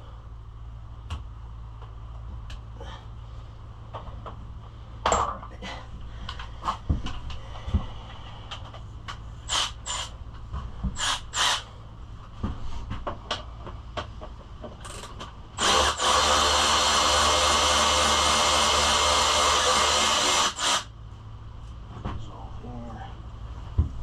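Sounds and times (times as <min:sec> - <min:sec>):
loud motor whir: 0:11.0 - 0:11.6, 0:15.6 - 0:20.9.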